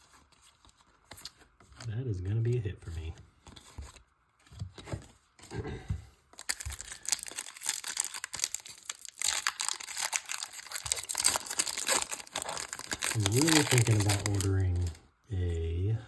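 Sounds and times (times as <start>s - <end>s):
foil wrapper crinkling and tearing: 6.4s - 15.0s.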